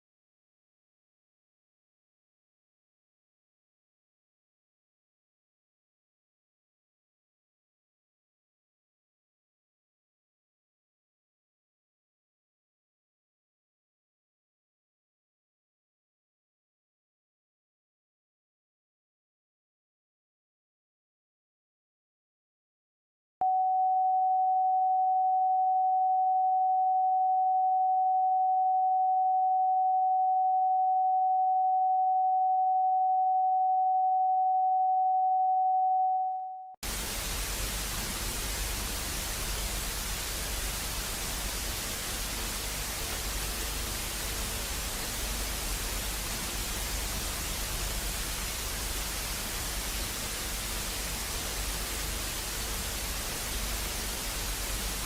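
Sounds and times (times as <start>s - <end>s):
static hiss: 36.8s - 55.0s.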